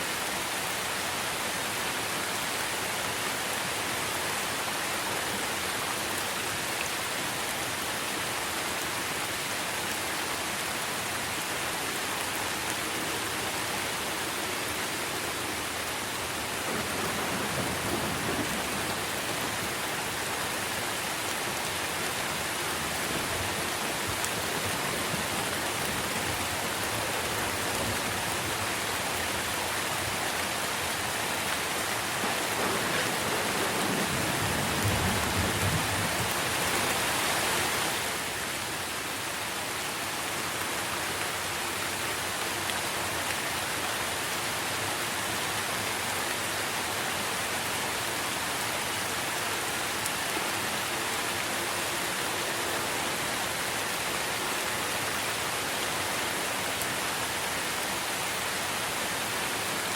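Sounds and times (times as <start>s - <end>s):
rain on tree leaves: 0.0s - 59.9s
distant thunder rumble: 16.6s - 20.1s, 22.3s - 28.7s, 31.7s - 36.6s.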